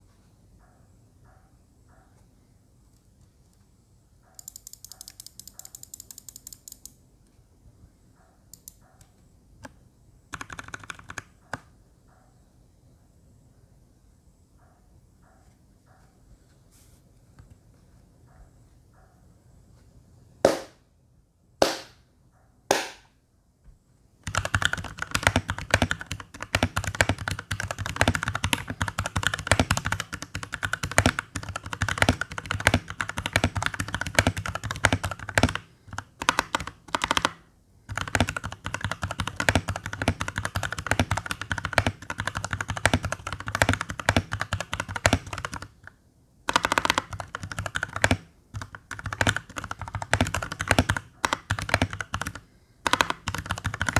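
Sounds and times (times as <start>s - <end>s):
mechanical keyboard typing: 4.4s - 7.0s, 9.6s - 11.7s, 24.2s - 53.9s.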